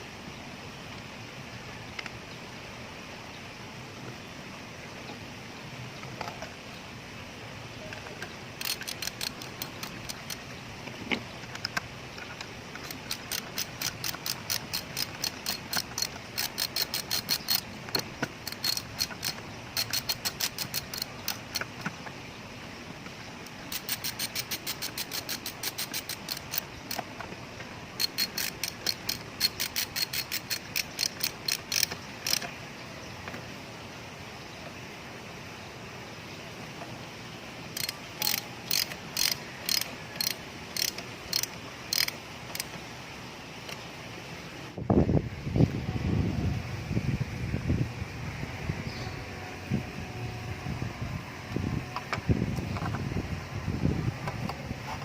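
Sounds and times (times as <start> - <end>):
ratchet wrench clicking: 8.6 - 10.5, 11.4 - 22.0, 23.4 - 27.3, 28.0 - 32.6, 37.7 - 42.8.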